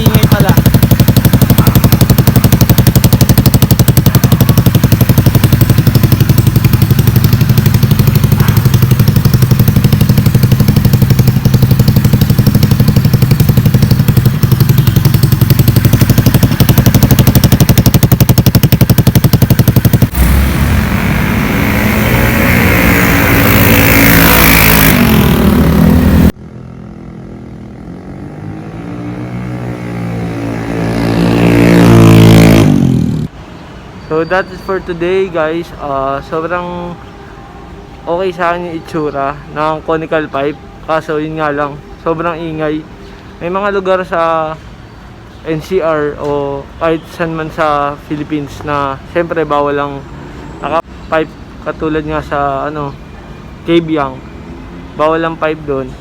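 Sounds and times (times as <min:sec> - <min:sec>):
loud motorcycle engine revving: 0:00.0 - 0:33.3.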